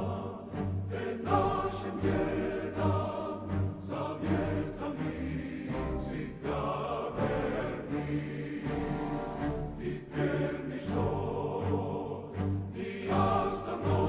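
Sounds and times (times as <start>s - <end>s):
choir-like chant: 0.0s - 14.0s.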